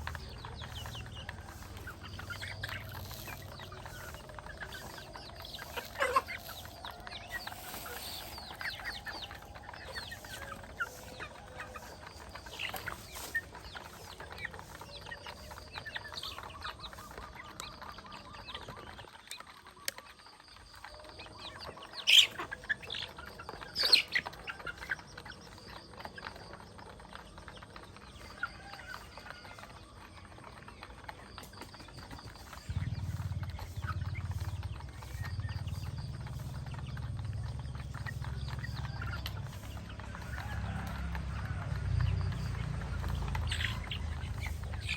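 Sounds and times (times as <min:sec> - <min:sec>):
chickens clucking: 0:00.0 - 0:44.9
chicken squawks: 0:05.6 - 0:09.2.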